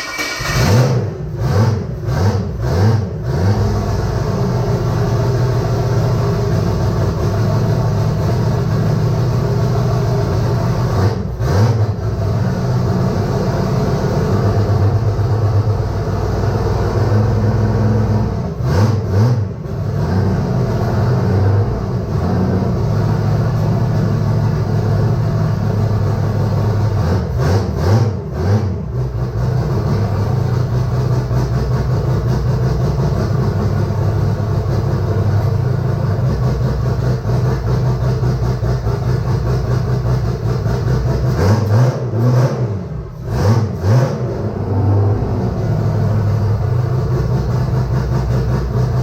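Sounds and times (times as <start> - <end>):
car engine idling and revving: 0.0 - 49.0.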